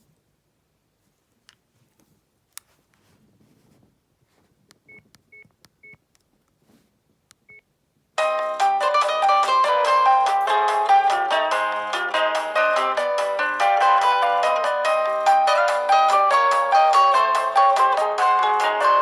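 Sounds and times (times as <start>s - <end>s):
ringtone melody: 8.2s - 19.0s.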